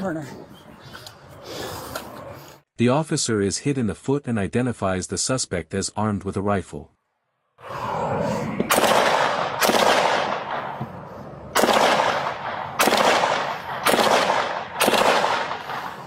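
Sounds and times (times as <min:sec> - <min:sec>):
gunshots with echoing tail: 0:07.6 - 0:16.0.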